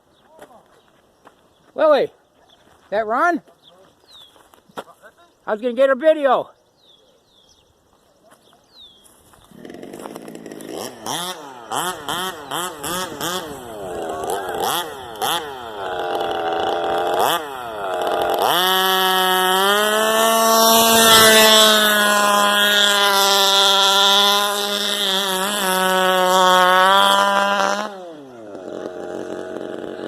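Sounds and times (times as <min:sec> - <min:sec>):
small two-stroke engine revving: 0:09.4 - 0:30.0.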